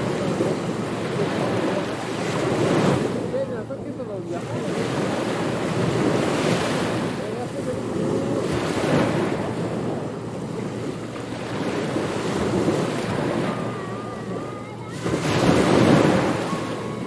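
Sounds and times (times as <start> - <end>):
ocean waves breaking on beach: 0.0 - 17.0
wind: 0.0 - 17.0.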